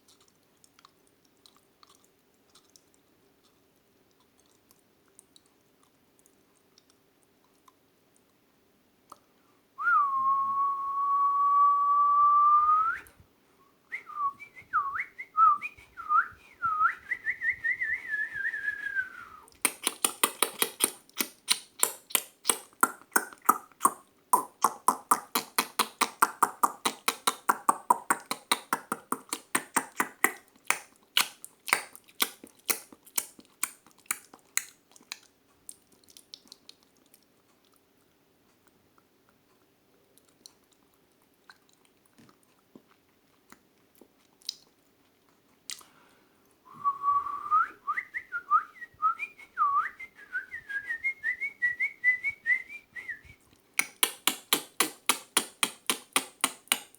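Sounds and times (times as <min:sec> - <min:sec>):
whistling imitating birdsong: 0:13.9 - 0:19.5
sharp mouth clicks: 0:19.5 - 0:37.2, 0:44.4 - 0:44.7, 0:45.7 - 0:45.9, 0:53.5 - 0:56.9.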